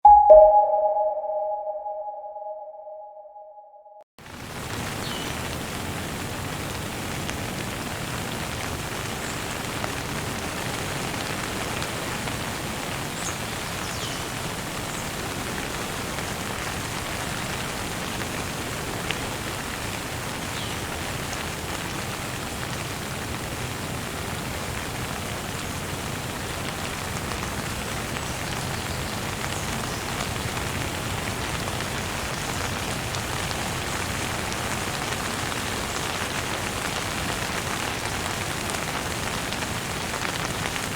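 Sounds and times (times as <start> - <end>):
faint high chirps: 0.0 - 3.6
light rain falling: 4.2 - 40.9.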